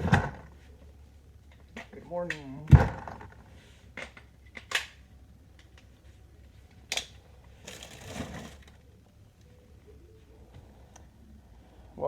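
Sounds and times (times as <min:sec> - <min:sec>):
scraping and rustling: 0:07.6 - 0:08.8.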